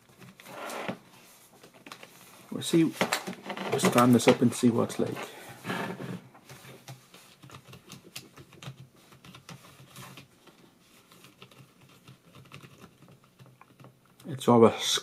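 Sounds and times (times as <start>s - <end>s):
keyboard handling clatter: 2.9s - 4.6s, 6.4s - 14.2s.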